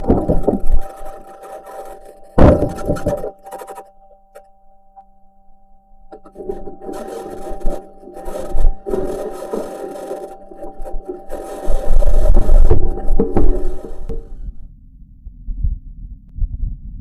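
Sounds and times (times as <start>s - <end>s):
metal wheels grinding over rock: 0.0s - 3.9s, 6.2s - 14.5s
electrical hum: 0.0s - 17.0s.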